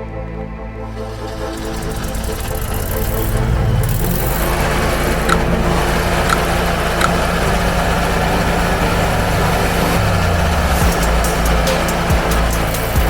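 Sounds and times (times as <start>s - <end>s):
generator engine running: 0.9s - 13.0s.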